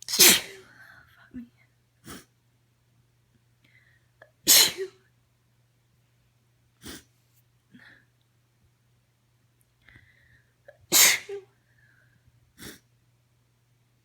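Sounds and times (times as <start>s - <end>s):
woman sneezing: 0.1s - 0.7s, 4.5s - 5.0s, 10.9s - 11.4s.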